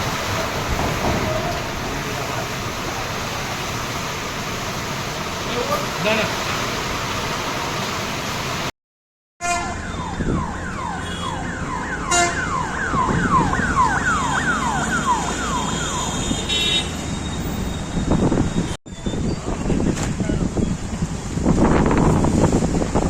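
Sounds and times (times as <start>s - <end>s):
heavy rain: 0.0s - 8.7s
car alarm whooping: 9.7s - 18.7s.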